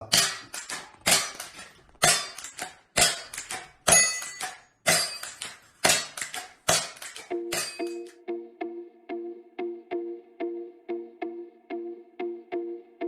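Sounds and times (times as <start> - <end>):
toy pistol firing snaps: 0.1 - 8.1.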